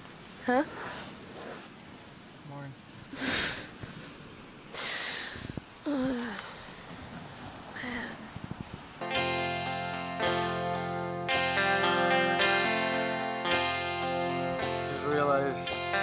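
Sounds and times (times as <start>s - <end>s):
crickets chirping: 0.0s - 9.0s
guitar music: 9.0s - 16.0s.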